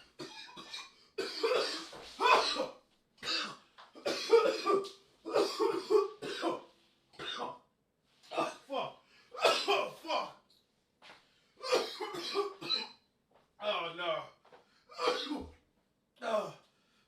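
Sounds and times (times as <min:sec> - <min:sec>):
person coughing harshly: 0:00.1 - 0:07.6, 0:08.3 - 0:10.4, 0:11.6 - 0:13.0, 0:14.9 - 0:15.6, 0:16.2 - 0:16.6.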